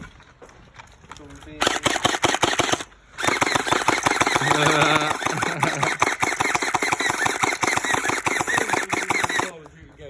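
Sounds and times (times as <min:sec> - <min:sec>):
gel blaster firing full auto: 0:01.6 - 0:09.5.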